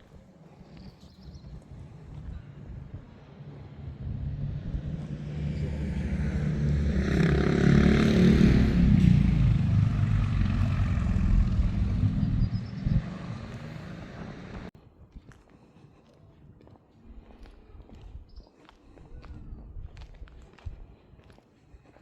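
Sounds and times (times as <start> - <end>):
motor vehicle passing by: 2.5 - 14.7.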